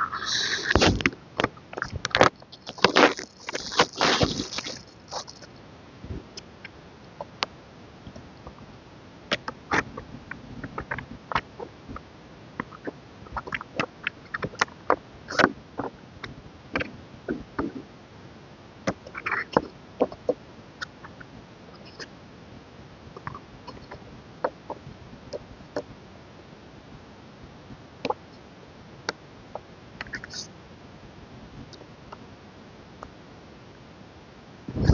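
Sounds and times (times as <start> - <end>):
hands handling album: 2.1 - 5.5.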